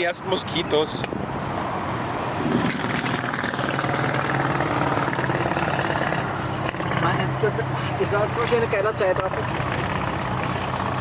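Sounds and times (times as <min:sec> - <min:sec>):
car engine running: 0:02.4 - 0:11.0.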